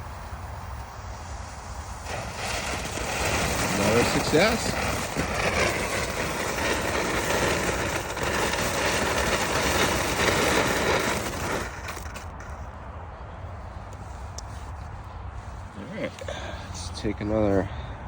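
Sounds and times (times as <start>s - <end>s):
firework fountain hissing: 0.0s - 12.9s.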